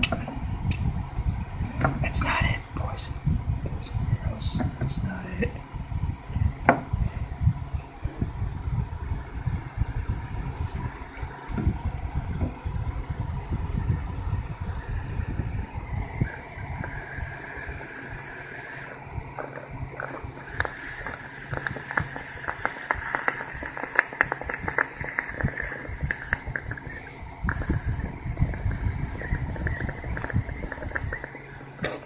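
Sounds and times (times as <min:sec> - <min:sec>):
hiss of air: 0:13.5 - 0:19.0, 0:20.0 - 0:32.0
water bottle bubbling and gurgling: 0:16.2 - 0:32.0.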